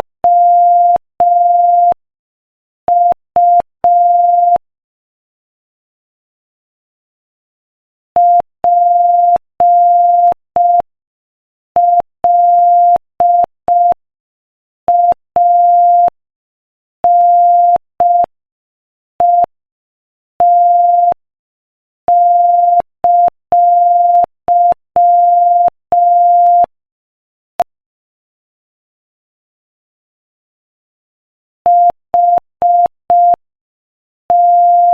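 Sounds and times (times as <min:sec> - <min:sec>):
morse code beeps: 0:22.1 - 0:26.7, 0:31.7 - 0:33.4, 0:34.3 - 0:34.9.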